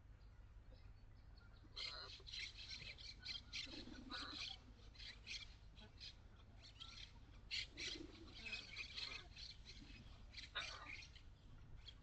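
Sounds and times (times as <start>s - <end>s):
low rumble of wind: 0.0s - 12.0s
birds chirping: 0.1s - 12.0s.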